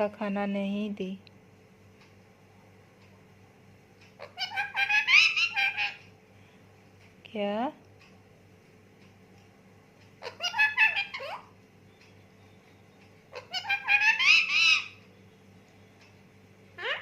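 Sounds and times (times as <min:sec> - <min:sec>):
parrot chattering calls: 0:04.1 - 0:06.1, 0:10.2 - 0:11.6, 0:13.3 - 0:15.1, 0:16.7 - 0:17.0.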